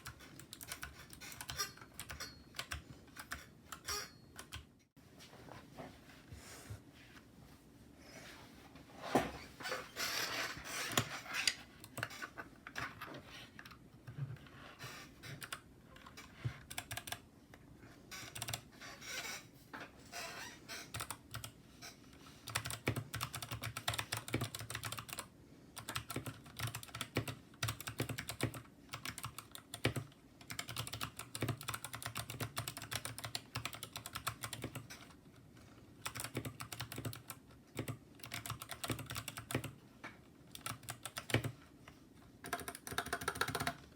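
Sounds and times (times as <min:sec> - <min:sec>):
mechanical keyboard typing: 0:00.0 - 0:04.7, 0:15.3 - 0:17.2, 0:18.2 - 0:18.7, 0:20.9 - 0:21.6, 0:22.4 - 0:35.2, 0:36.0 - 0:39.8, 0:40.5 - 0:41.6, 0:42.4 - 0:43.9.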